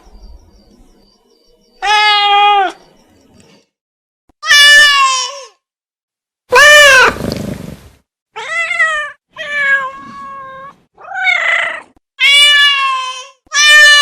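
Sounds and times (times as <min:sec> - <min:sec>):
cat meowing: 0:01.8 - 0:02.8, 0:08.4 - 0:14.0.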